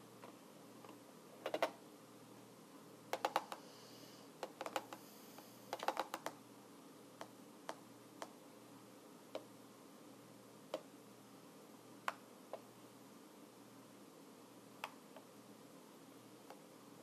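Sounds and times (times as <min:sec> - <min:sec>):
keyboard typing clicks: 0:03.1 - 0:03.6, 0:04.4 - 0:05.0, 0:05.7 - 0:06.4.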